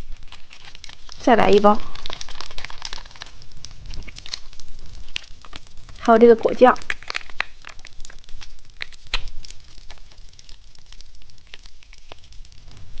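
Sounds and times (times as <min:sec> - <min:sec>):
packaging clicks and crackles: 0:00.0 - 0:13.0.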